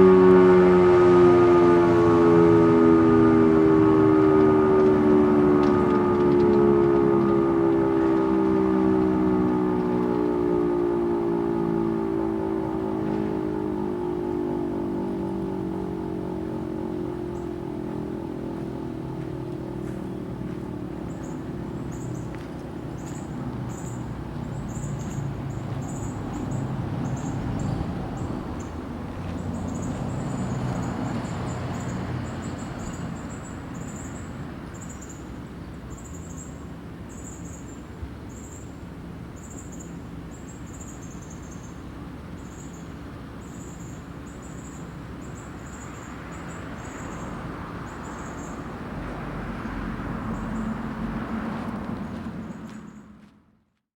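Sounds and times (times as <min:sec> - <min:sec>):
siren winding down: 0:00.0 - 0:34.3.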